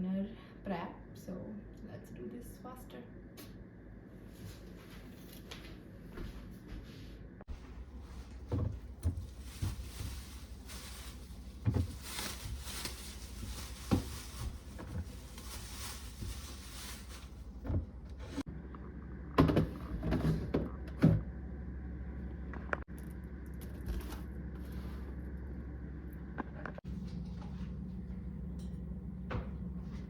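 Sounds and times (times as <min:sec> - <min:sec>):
steady low hum: 0:00.0 - 0:30.0
groceries knocking and clunking: 0:07.5 - 0:18.5.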